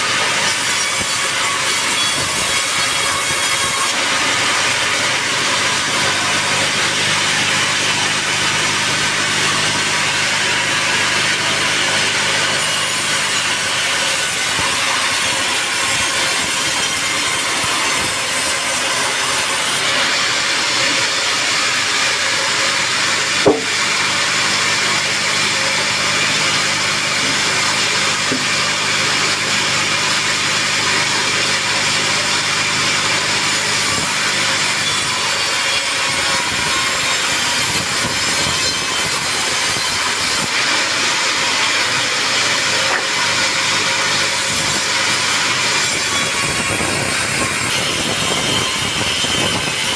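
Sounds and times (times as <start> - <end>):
saw blade cutting through log: 0.0 - 49.9
sharp knock: 23.4 - 23.8.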